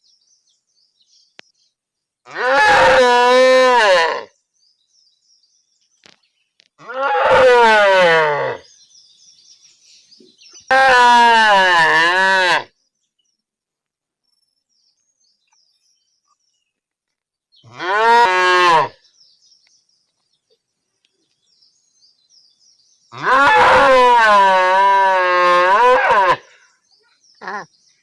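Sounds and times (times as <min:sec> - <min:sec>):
cow mooing: 0:02.3 - 0:04.3, 0:06.8 - 0:08.6, 0:10.7 - 0:12.7, 0:17.7 - 0:19.0, 0:23.2 - 0:26.5.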